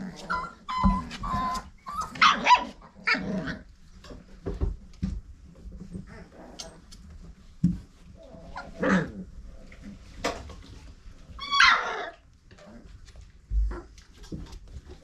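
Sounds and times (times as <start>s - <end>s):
puppy whining yelp: 0.0s - 3.6s, 11.4s - 12.2s
puppies yipping: 0.1s - 3.2s, 11.4s - 12.2s.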